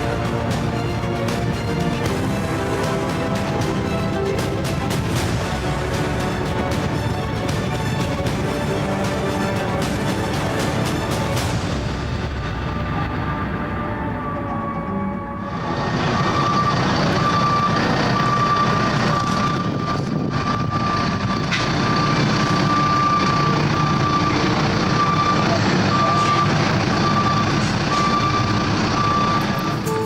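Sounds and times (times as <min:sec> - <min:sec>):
engine noise: 0:00.0 - 0:14.3, 0:15.4 - 0:30.0
reversing alarm beeping: 0:15.5 - 0:30.0.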